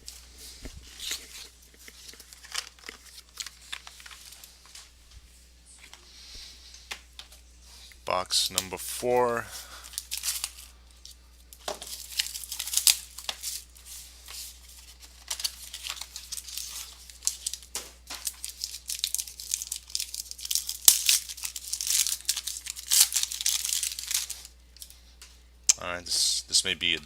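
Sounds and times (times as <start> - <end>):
plastic wrapping tearing and crinkling: 0.9 - 4.5, 9.8 - 10.7, 11.6 - 24.6.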